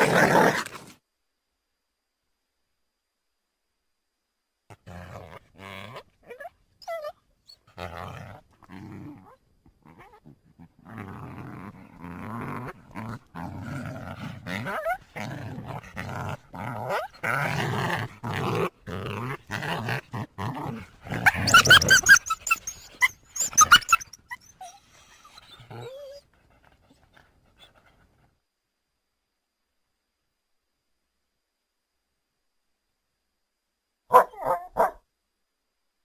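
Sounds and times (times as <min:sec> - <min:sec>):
coyote growling: 0:00.0 - 0:00.9, 0:04.7 - 0:28.2
coyote yipping and whining: 0:21.2 - 0:26.2.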